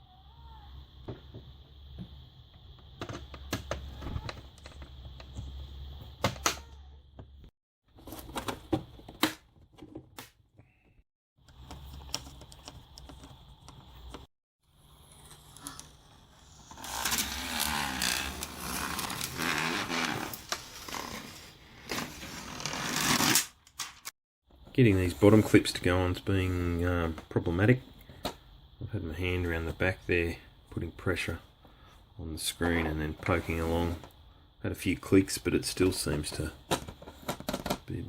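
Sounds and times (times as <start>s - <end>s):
plastic rubbing and scraping: 15.7s - 23.6s.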